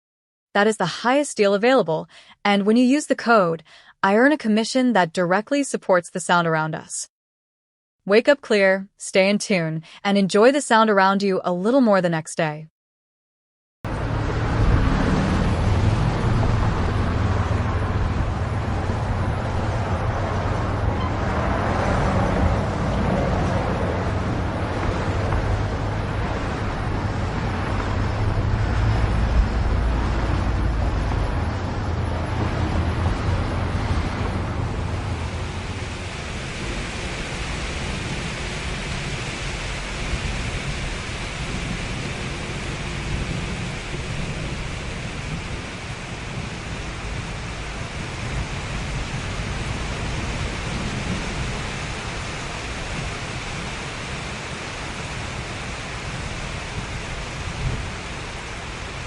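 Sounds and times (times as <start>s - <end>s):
low rumble of traffic: 13.9s - 59.0s.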